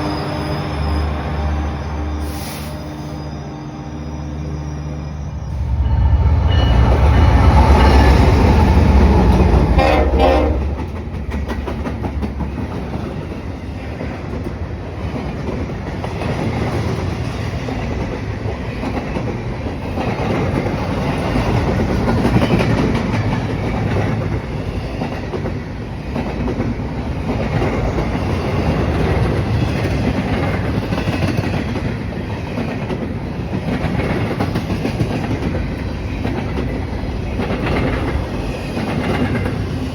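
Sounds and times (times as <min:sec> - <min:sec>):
train passing: 0:00.0 - 0:39.9
train horn blast: 0:05.5 - 0:10.9.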